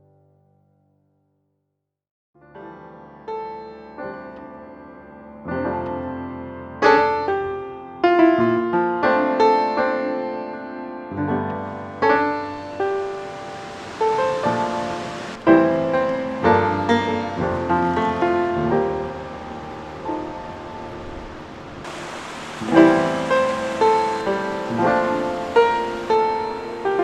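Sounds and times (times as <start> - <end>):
gentle solo piano: 2.4 - 27.0
rushing stream water: 11.6 - 27.0.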